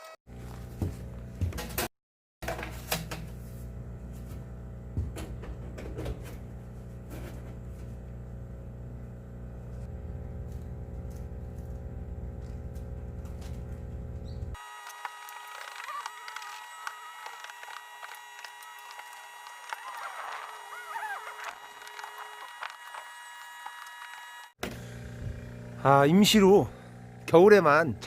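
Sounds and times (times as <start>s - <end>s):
steady low hum: 3.2s - 14.6s.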